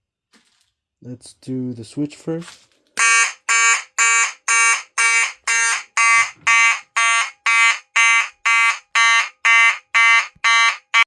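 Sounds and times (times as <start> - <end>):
fire alarm horn blasts: 3.0 - 11.0.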